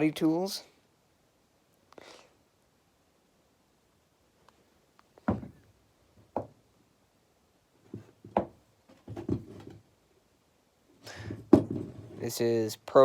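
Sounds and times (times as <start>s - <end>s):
hand tools knocking on hard surface: 5.3s - 5.6s, 11.3s - 12.2s.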